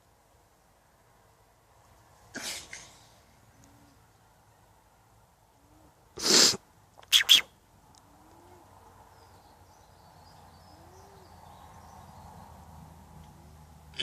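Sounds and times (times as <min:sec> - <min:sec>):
alpaca sneezing: 0:02.4 - 0:03.0, 0:06.2 - 0:06.6.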